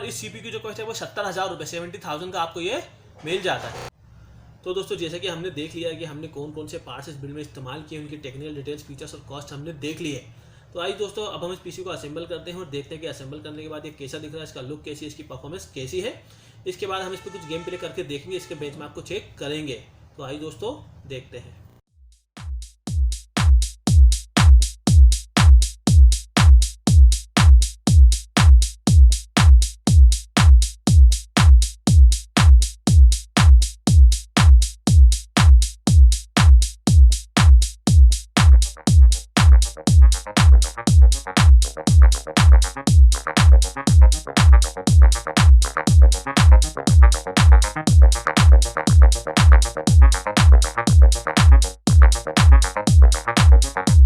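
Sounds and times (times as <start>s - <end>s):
drum machine kick: 22.0s - 54.0s.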